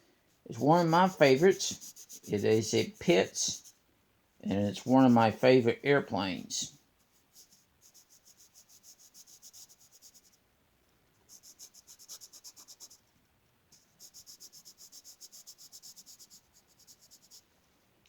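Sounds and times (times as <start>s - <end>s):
pencil scratching on paper: 0.5s - 3.8s, 7.1s - 10.4s, 11.3s - 13.0s, 13.8s - 17.5s.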